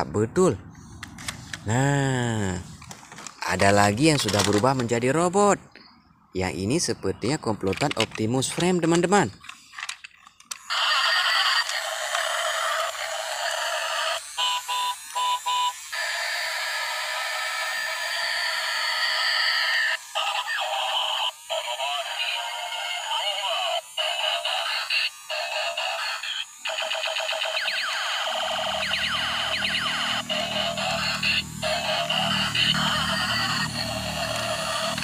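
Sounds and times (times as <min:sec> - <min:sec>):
tinny electronic toy tune: 0:13.8 - 0:16.4.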